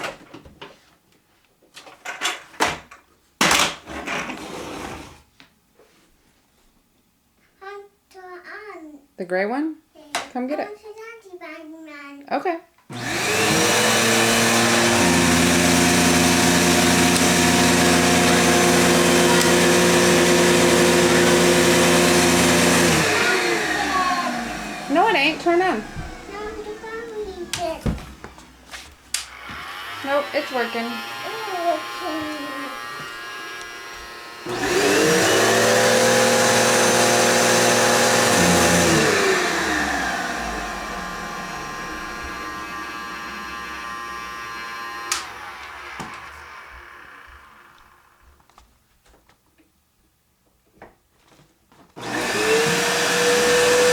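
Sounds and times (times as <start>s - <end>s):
vacuum cleaner running: 12.9s - 48.7s, 52.0s - 53.9s.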